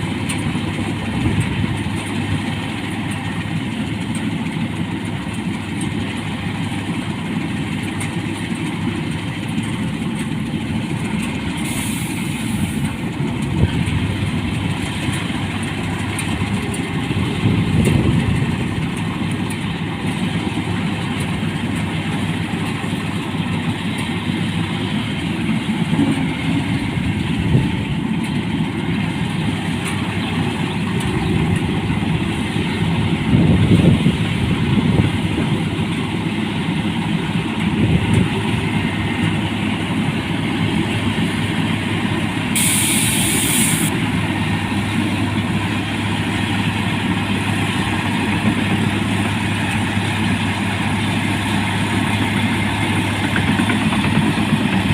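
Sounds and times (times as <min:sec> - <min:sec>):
diesel engine under load: 0:00.0 - 0:54.9
short hiss: 0:11.6 - 0:12.8, 0:42.6 - 0:43.9.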